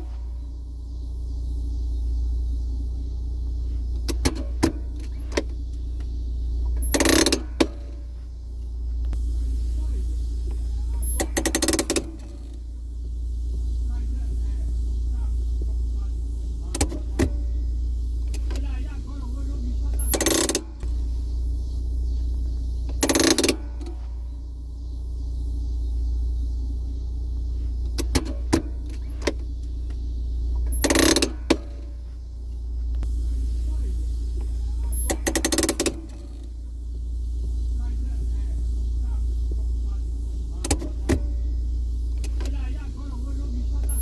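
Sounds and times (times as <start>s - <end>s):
low hum: 0.0s - 44.0s
low rumble: 0.0s - 44.0s
handbrake ratchet clicks: 6.7s - 8.0s, 11.0s - 12.6s, 16.7s - 17.4s, 19.9s - 20.7s, 22.9s - 24.0s, 27.9s - 30.0s, 30.6s - 31.8s, 34.8s - 36.5s.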